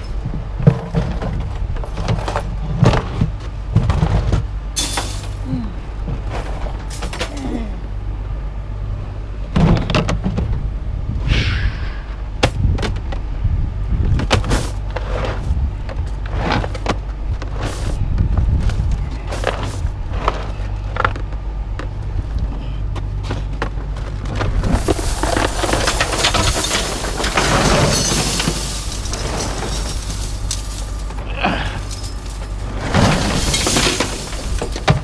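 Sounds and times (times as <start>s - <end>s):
steady low hum: 0.0s - 35.0s
scrap metal clanking and banging: 23.2s - 35.0s
metal scraping: 24.5s - 35.0s.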